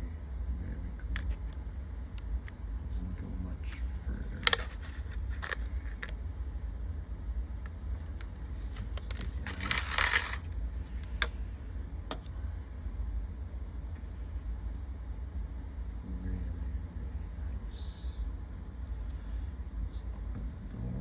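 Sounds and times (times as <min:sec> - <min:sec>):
steady low hum: 0:00.0 - 0:21.0
rustling scrape: 0:04.5 - 0:06.0, 0:08.7 - 0:10.5.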